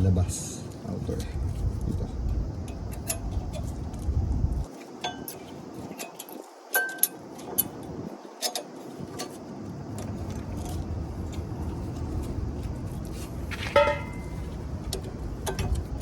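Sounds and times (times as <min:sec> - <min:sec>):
small metal parts clinking: 0:05.0 - 0:07.7
ringing metallic clink: 0:06.8 - 0:07.1, 0:13.7 - 0:14.4
low steady rumble: 0:09.7 - 0:16.0.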